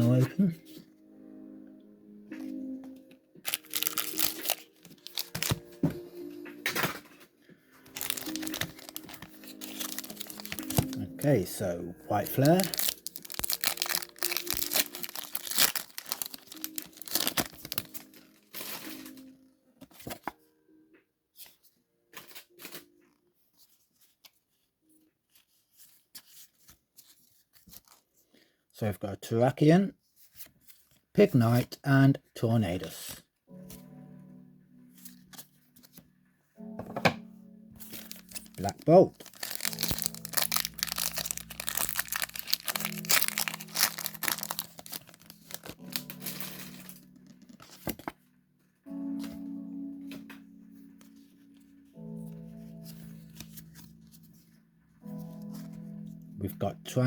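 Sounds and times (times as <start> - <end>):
faint background music: 0.0 - 57.0
foil wrapper crinkling and tearing: 3.4 - 5.7, 7.8 - 19.3, 37.8 - 48.2.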